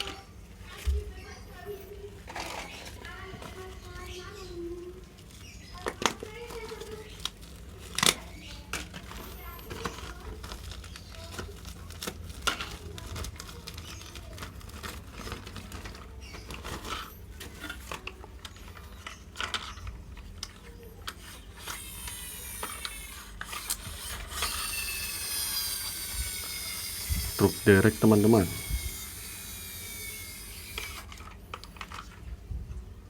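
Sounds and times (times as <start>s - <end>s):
plastic toy parts clicking: 5.9s - 32.1s.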